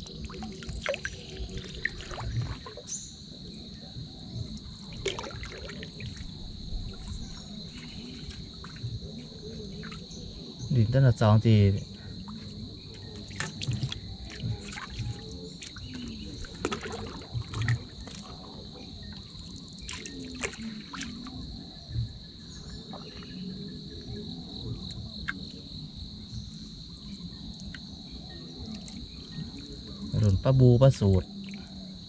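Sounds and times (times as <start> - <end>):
high-pitched insect chorus: 0.0 - 32.0.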